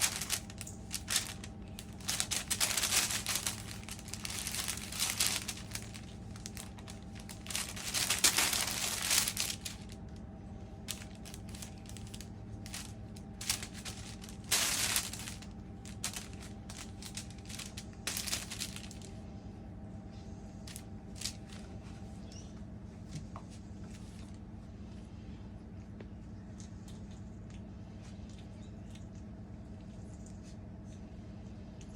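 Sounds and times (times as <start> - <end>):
baking paper crinkling under paws: 0.0 - 19.4, 20.2 - 22.2, 23.0 - 25.0
faint steady hum: 0.0 - 31.9.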